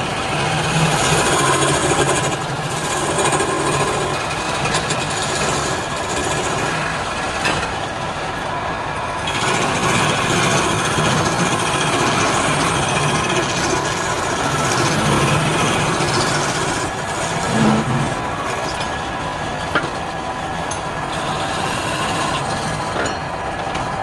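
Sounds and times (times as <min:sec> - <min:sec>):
lathe motor hum: 0:00.0 - 0:24.0
turning tool scraping wood: 0:00.7 - 0:06.7, 0:09.3 - 0:18.2, 0:21.1 - 0:22.9.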